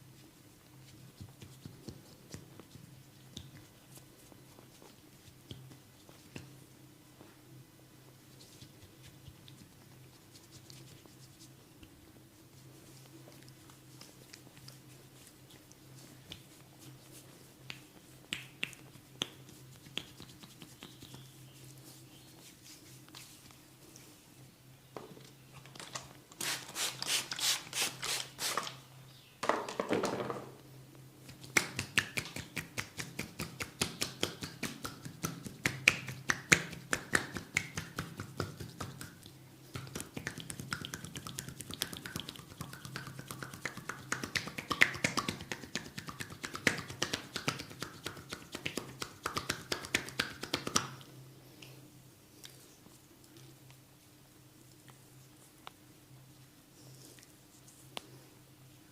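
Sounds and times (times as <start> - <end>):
hands tapping and snapping: 17.6 - 21.2, 31.2 - 51.1.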